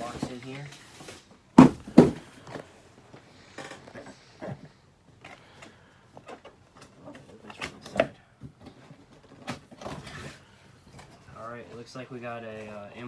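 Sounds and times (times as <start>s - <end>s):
rustling and scraping: 0.0s - 2.7s, 8.6s - 12.9s
cardboard box thumps: 1.6s - 2.3s.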